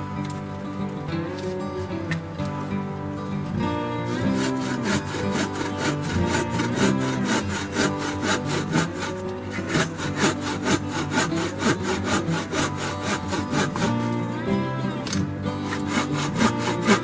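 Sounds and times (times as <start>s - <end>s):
background music: 0.0s - 17.0s
hand saw cutting wood: 3.8s - 17.0s.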